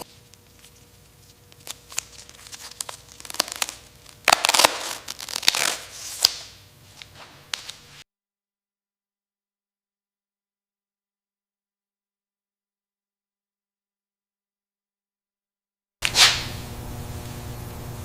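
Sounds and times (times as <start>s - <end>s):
faint steady hum: 0.0s - 8.0s.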